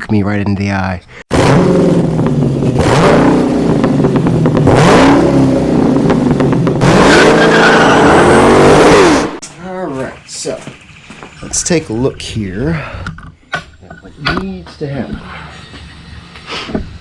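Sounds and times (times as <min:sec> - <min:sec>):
car engine revving: 0:01.3 - 0:09.4.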